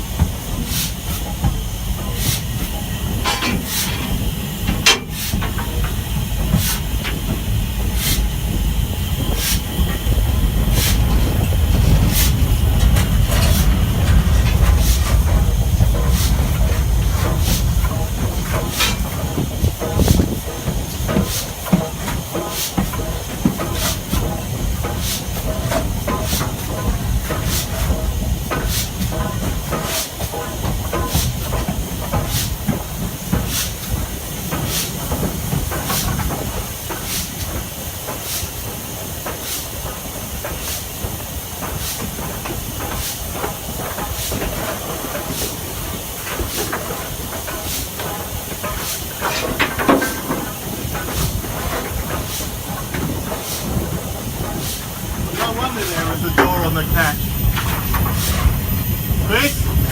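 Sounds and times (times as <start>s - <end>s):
steam locomotive hissing steam: 0.0s - 59.9s
low rumble: 3.1s - 20.0s, 55.0s - 59.9s.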